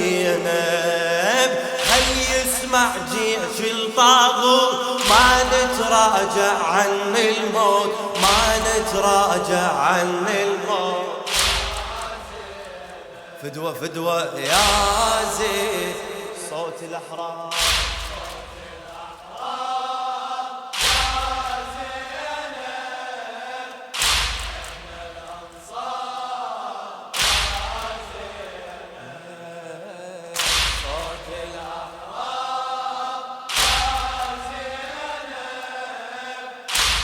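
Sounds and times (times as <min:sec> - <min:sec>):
crowd chanting: 0:00.0 - 0:37.0
hands slapping chests: 0:01.8 - 0:03.2, 0:05.0 - 0:06.0, 0:08.2 - 0:09.2, 0:11.3 - 0:13.0, 0:17.5 - 0:19.5, 0:20.7 - 0:22.2, 0:23.9 - 0:26.2, 0:27.1 - 0:28.6, 0:30.4 - 0:31.8, 0:33.5 - 0:35.7, 0:36.7 - 0:37.0.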